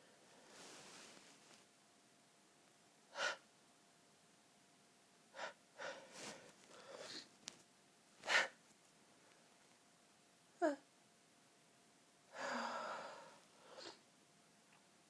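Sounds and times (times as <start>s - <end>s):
person sneezing: 8.2s - 8.6s.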